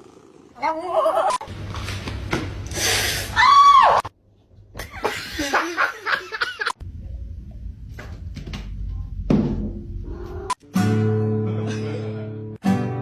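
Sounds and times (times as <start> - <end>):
person laughing: 4.8 - 6.8.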